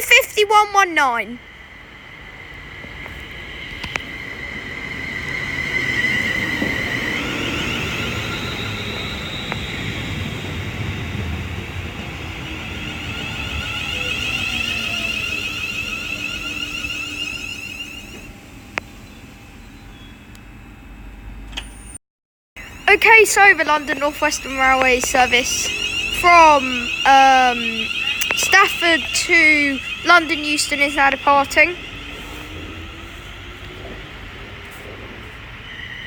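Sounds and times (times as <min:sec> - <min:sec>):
electric train inverter whine: 0:00.0 - 0:22.0, 0:22.6 - 0:36.0.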